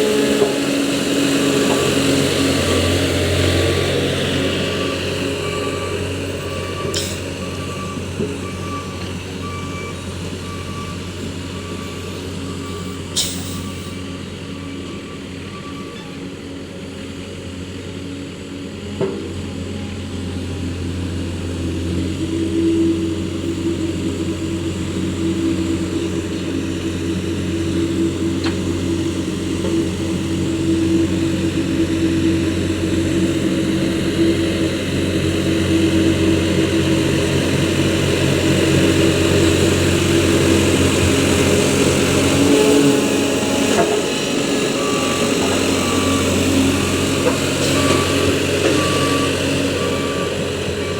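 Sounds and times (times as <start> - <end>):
diesel engine running: 0.0 - 50.9
reversing alarm beeping: 1.4 - 16.4, 37.9 - 50.9.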